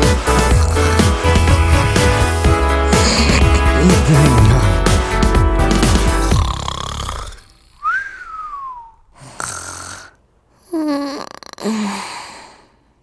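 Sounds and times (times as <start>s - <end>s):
person snoring: 0.3s - 4.9s, 6.2s - 8.0s, 9.2s - 12.7s.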